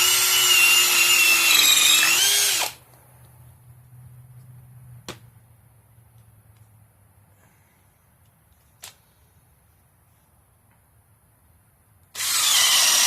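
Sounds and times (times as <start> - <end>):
hammer drill motor whine: 0.0 - 2.8, 12.2 - 13.0.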